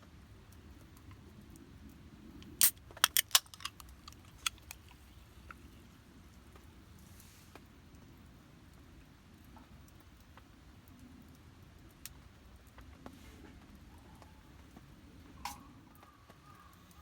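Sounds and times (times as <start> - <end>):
sharp clicks: 2.4 - 5.6.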